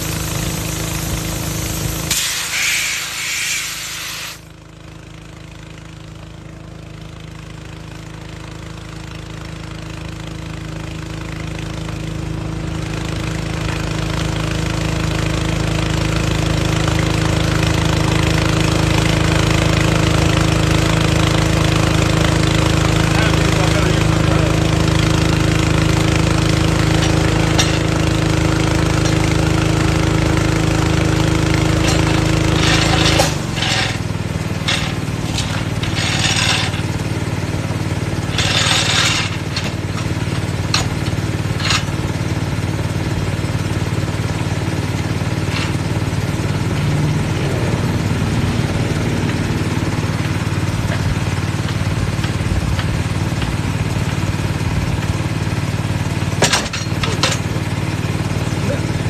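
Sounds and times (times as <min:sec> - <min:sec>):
air compressor engine running: 0:00.0 - 0:59.0
short bursts of noise: 0:02.1 - 0:04.4
metal clanks: 0:26.7 - 0:28.2, 0:31.6 - 0:37.1, 0:38.2 - 0:42.1, 0:56.4 - 0:57.8.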